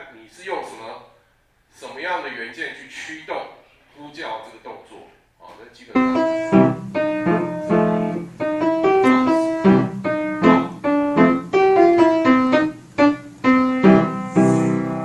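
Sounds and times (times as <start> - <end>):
piano music: 6.0 - 15.0.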